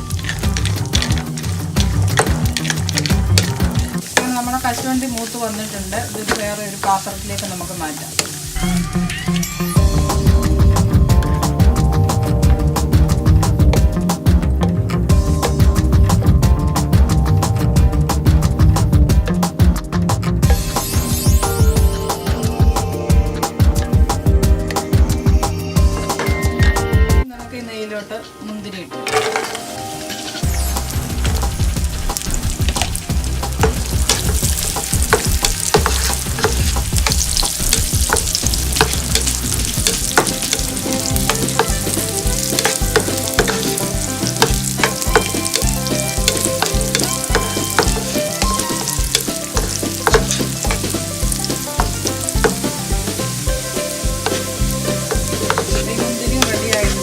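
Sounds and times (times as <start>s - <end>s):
food sizzling in a pan: 0.0s - 11.9s, 20.4s - 22.9s, 29.2s - 57.0s
spatula scraping and tapping pan: 0.1s - 7.5s, 33.5s - 53.4s, 54.2s - 57.0s.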